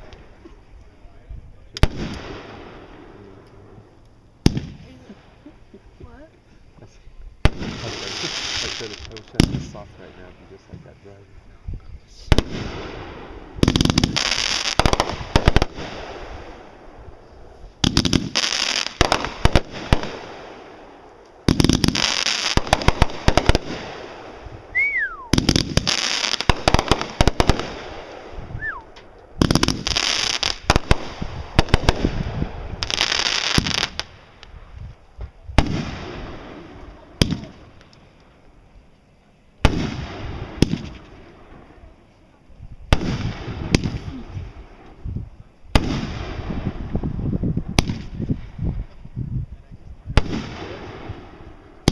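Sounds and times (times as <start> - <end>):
fireworks bangs and crackling: 0.0 - 39.0, 39.6 - 51.9
falling firework whistle: 24.7 - 26.2, 28.5 - 29.0.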